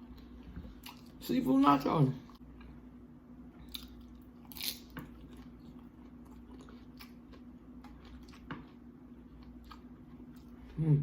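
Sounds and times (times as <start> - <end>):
faint low hum: 0.0 - 11.0
chewing: 3.7 - 10.8.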